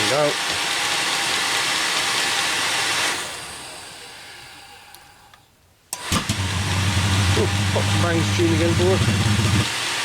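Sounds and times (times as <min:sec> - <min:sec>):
heater motor humming: 0:06.0 - 0:09.9
heater blower hissing and spinning down: 0:06.0 - 0:10.0.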